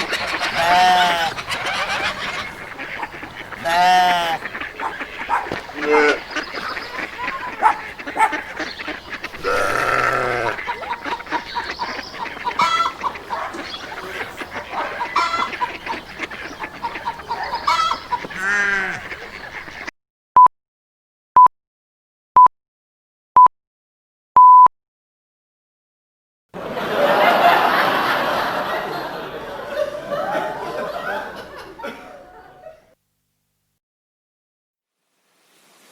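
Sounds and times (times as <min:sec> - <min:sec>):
chickens clucking: 0:00.0 - 0:19.9, 0:26.7 - 0:32.9
short time signal beeps: 0:24.4 - 0:24.7.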